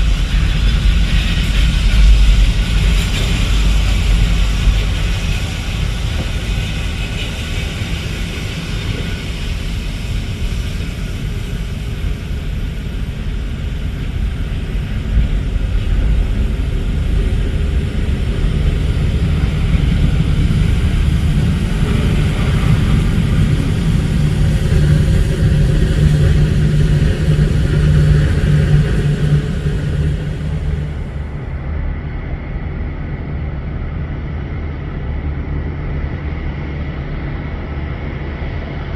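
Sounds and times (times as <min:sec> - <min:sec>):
jet engines rumbling: 0:00.0 - 0:38.9
low hum: 0:00.0 - 0:38.9.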